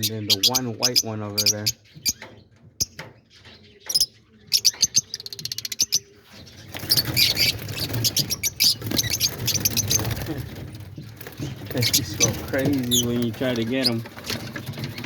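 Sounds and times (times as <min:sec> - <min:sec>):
lovebirds chirping and shrieking: 0:00.0 - 0:15.0
birds flapping: 0:06.4 - 0:15.0.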